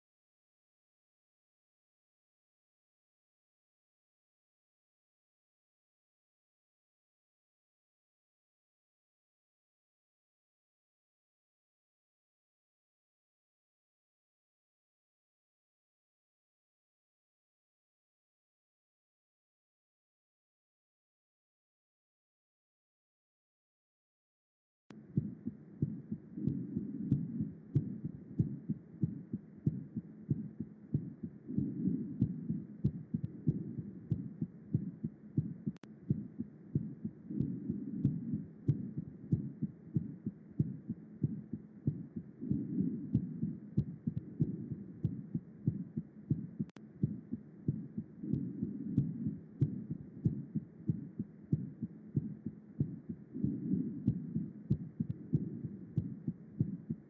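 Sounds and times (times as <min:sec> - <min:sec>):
low heartbeat sounds: 0:25.0 - 0:57.0.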